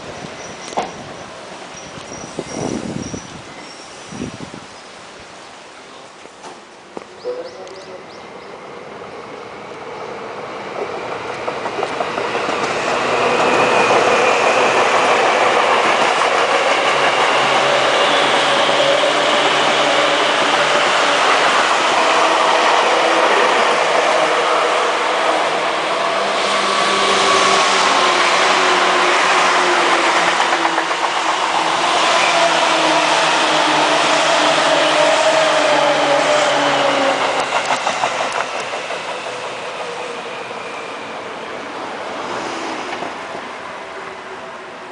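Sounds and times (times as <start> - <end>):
train wheels on rails: 0.0 - 4.5, 6.2 - 44.8.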